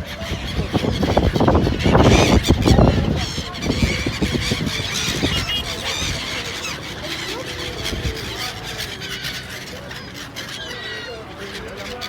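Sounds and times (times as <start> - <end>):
gulls calling: 0.0 - 12.0.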